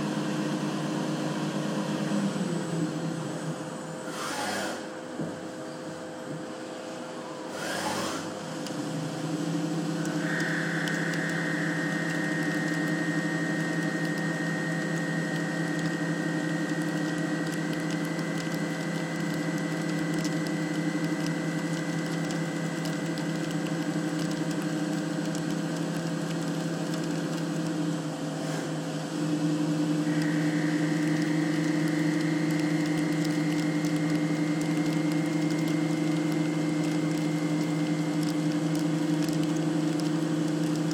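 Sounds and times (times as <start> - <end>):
machine spindle whining: 9.3 - 28.1, 29.4 - 40.9.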